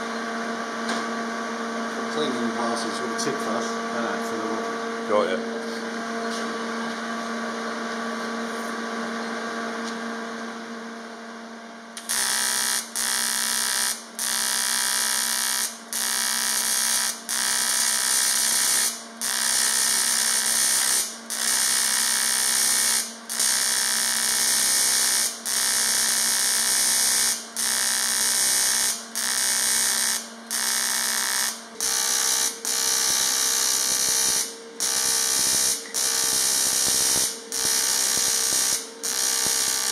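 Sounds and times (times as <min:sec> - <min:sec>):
welding arc buzzing: 0:12.0 - 0:39.9
electrical hum: 0:27.6 - 0:39.9.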